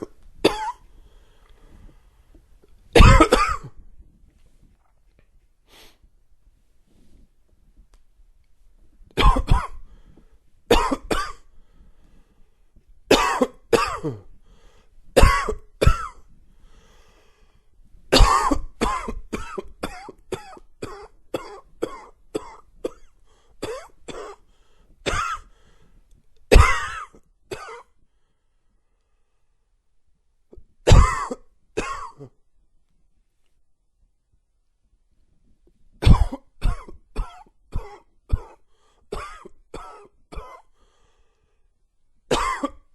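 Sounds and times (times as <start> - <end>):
man coughing: 0.0 - 0.8, 3.0 - 3.8, 9.2 - 9.8, 10.7 - 11.4, 13.1 - 14.3, 15.2 - 16.2, 18.2 - 24.4, 26.5 - 27.9, 30.9 - 32.4, 36.0 - 40.7, 42.3 - 42.9.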